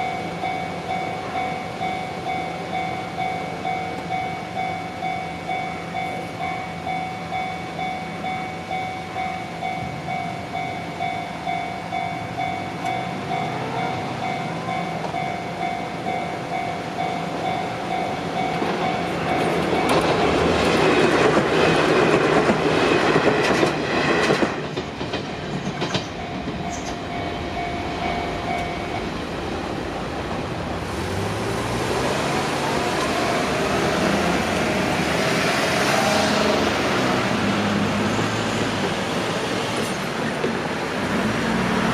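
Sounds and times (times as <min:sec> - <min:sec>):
train wheels clattering: 0:18.3 - 0:28.9
engine speeding up: 0:30.8 - 0:38.6.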